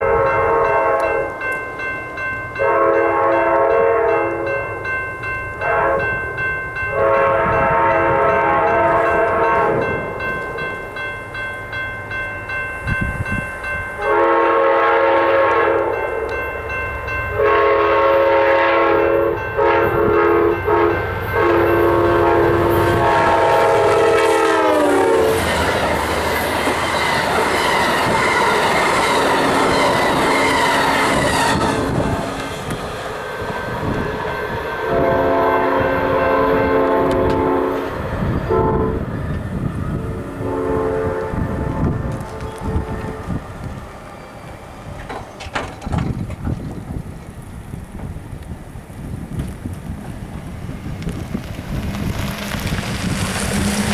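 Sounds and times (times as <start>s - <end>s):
locomotive air horn blasts: 0.0s - 1.3s, 2.6s - 4.6s, 5.6s - 6.2s, 6.9s - 10.0s, 14.0s - 16.3s, 17.3s - 32.4s, 34.8s - 39.1s, 40.1s - 43.4s
train roar and rail clatter: 0.0s - 53.9s.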